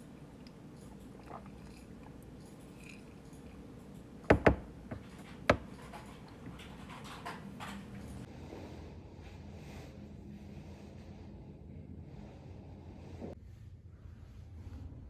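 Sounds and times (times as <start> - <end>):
sharp taps or knocks: 4.3 - 5.7.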